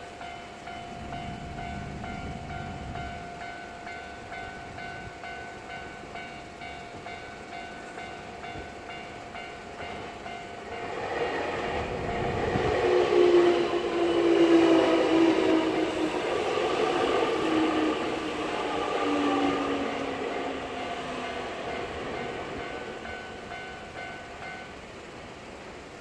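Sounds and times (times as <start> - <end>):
level crossing warning bell: 0.0 - 25.8
train rumble: 0.0 - 26.0
low steady whine: 11.6 - 26.0.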